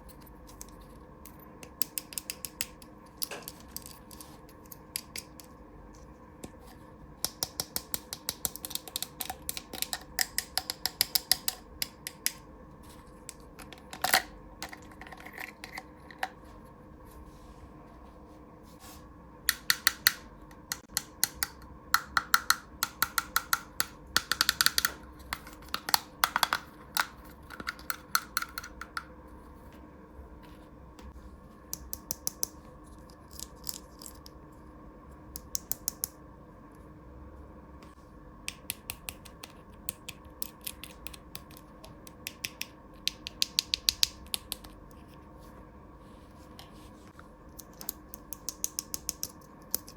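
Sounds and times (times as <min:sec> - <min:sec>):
faint steady hum: 0:00.0 - 0:49.9
plastic toy pieces clicking: 0:21.0 - 0:29.0.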